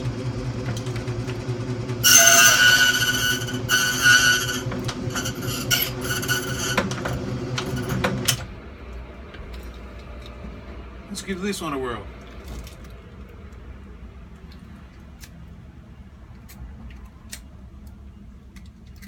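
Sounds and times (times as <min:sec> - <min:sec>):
key-cutting machine motor hum: 0:00.4 - 0:08.4
cutter whining on key blank: 0:00.6 - 0:08.5.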